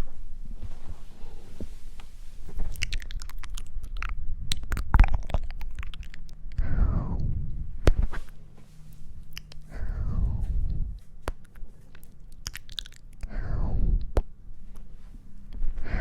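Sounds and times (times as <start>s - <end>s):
crisp clicks and crunchy crackles: 2.5s - 6.6s, 11.0s - 13.3s
low rumbling handling noise: 6.6s - 11.8s.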